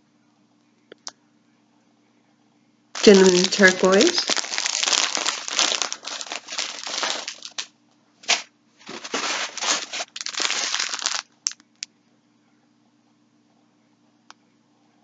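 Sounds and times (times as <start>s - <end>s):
plastic packaging crinkling: 3.0s - 11.9s.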